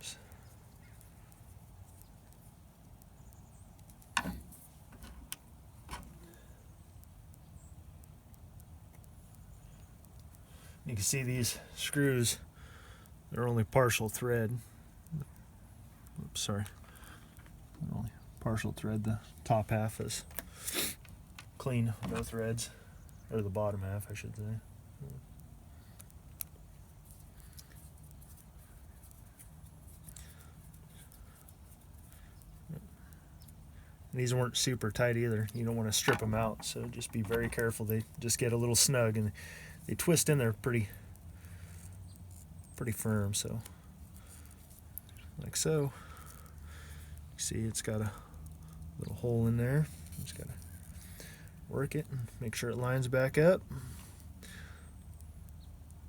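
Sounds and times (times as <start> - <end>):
low steady hum: 0.0 - 56.0
faint ticks: 6.1 - 11.1, 24.4 - 34.2, 40.7 - 49.0
sharp clicks of watch parts: 46.0 - 47.3, 48.2 - 49.0.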